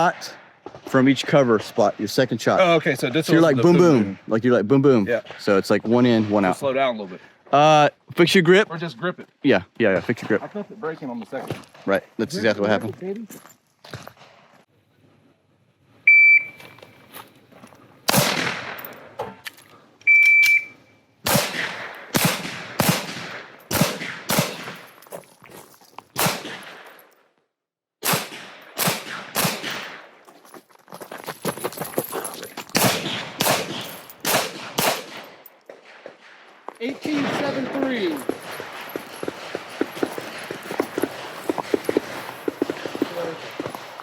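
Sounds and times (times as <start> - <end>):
shot timer beep: 16.1 - 16.7, 20.1 - 20.9
handgun shots: 18.1 - 19.4, 21.3 - 24.9, 26.2 - 27.0, 28.0 - 30.1, 32.8 - 35.4.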